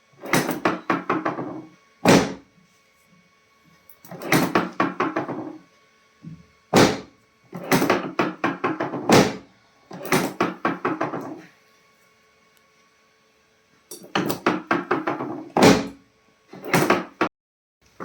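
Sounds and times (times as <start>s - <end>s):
short knocks and thumps: 7.7s - 9.4s.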